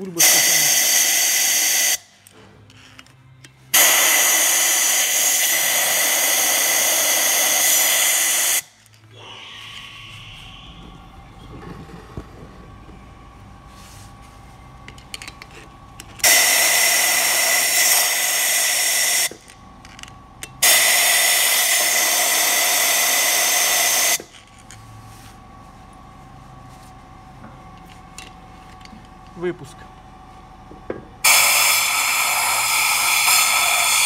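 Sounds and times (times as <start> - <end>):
compressed air blow gun hissing: 3.8 - 10.7, 20.6 - 24.2, 31.2 - 34.0.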